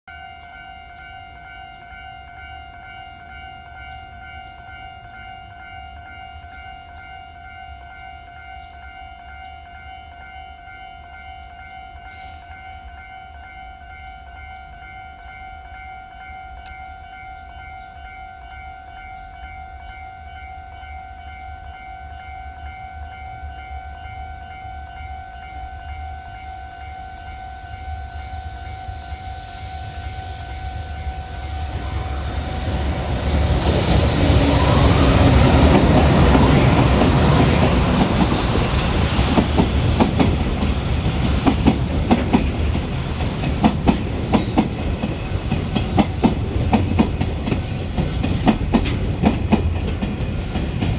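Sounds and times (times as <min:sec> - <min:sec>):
level-crossing warning bell: 0:00.1 - 0:50.9
train passing with loud rush: 0:00.1 - 0:50.9
wheels clacking over rail joints: 0:31.3 - 0:50.9.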